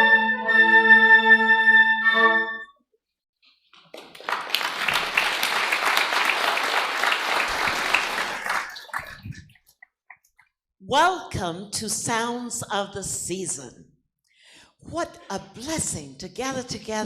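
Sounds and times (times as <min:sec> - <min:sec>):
audience applause: 0:03.8 - 0:09.4.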